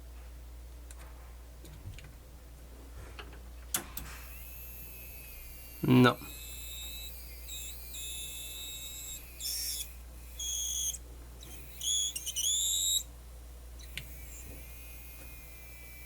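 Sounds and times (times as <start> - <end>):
low mains hum: 0.0 - 16.0
small electric motor whining: 4.0 - 13.1, 13.8 - 16.0.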